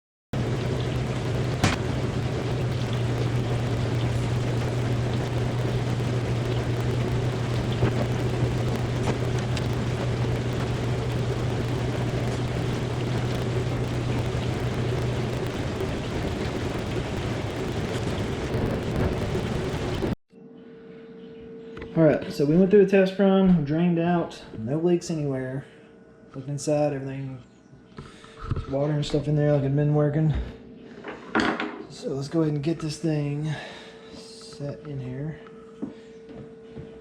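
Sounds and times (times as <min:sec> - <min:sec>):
dishwasher motor hum: 0:00.4 - 0:20.2
water spraying and splashing: 0:00.4 - 0:20.2.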